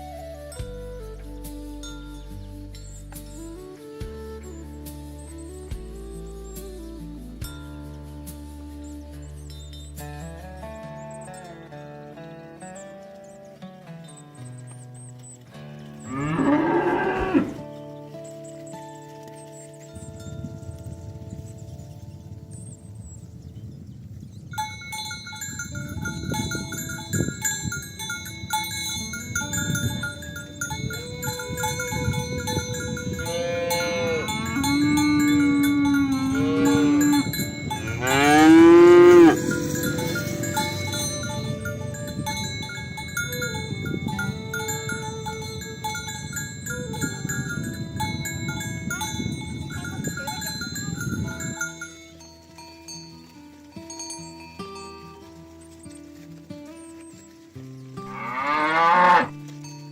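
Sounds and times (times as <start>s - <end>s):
cowbells clanking: 0.5s - 4.0s, 5.5s - 22.9s, 24.3s - 59.9s
cow mooing: 15.7s - 17.7s, 32.1s - 42.0s, 58.1s - 59.4s.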